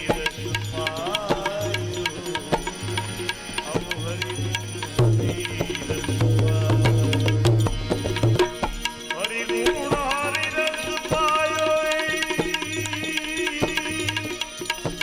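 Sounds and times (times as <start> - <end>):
hand drum beat: 3.6 - 15.0.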